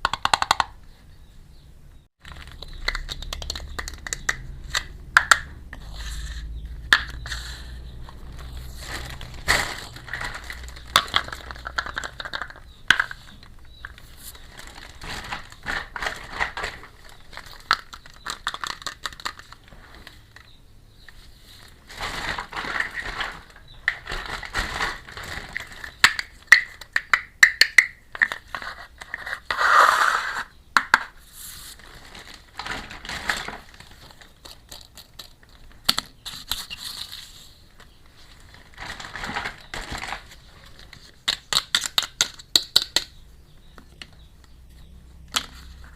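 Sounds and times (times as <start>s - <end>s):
plastic toy pieces clicking: 0.0s - 0.7s, 17.5s - 19.6s, 34.4s - 36.7s, 41.2s - 43.2s
plastic packaging crinkling and tearing: 8.0s - 12.6s, 13.9s - 20.3s, 21.7s - 26.4s, 31.7s - 37.4s.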